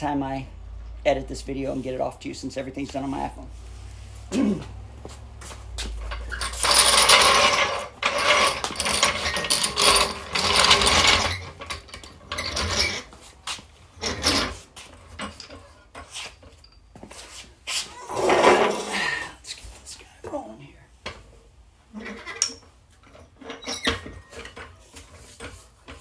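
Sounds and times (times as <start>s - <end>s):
power tool rattling: 6.1s - 13.1s
tools clicking and knocking: 22.2s - 26.0s.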